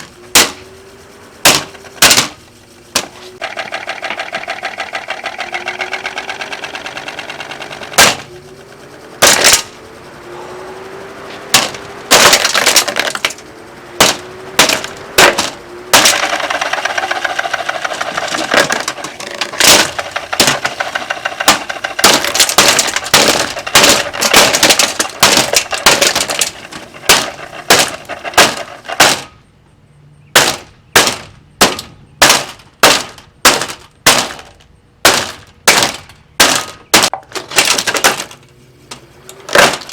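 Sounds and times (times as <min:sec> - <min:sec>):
blows with plastic cracking: 0:00.0 - 0:10.1, 0:10.8 - 0:29.4
fan ticking and motor hum: 0:00.0 - 0:39.9.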